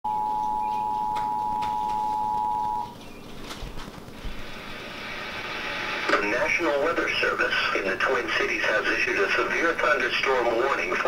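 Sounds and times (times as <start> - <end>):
two-tone alert beep: 0.1 - 2.9.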